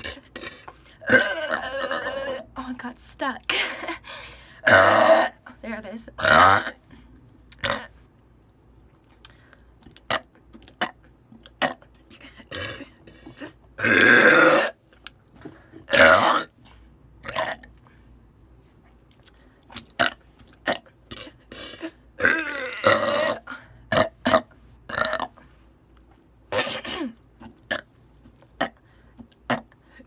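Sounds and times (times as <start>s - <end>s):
woman belching: 0.0s - 2.5s, 4.6s - 5.4s, 6.2s - 6.8s, 12.5s - 14.8s, 15.9s - 16.5s, 22.2s - 25.3s.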